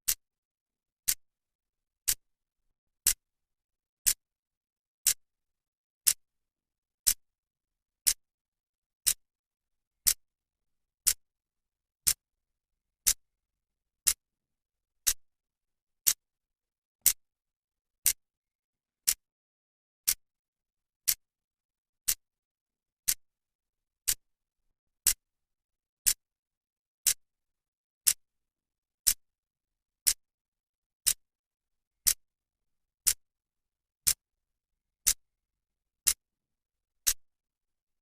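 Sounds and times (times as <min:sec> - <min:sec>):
clock ticking: 0:14.0 - 0:14.2, 0:16.0 - 0:16.2, 0:19.0 - 0:19.2.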